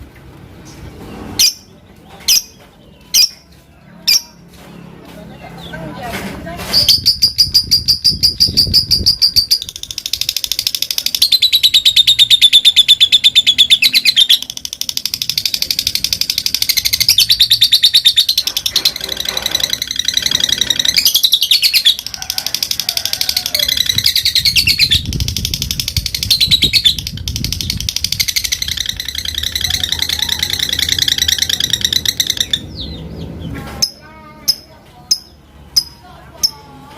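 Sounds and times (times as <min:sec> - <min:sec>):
bird chattering song: 0:06.7 - 0:22.1, 0:23.5 - 0:36.7.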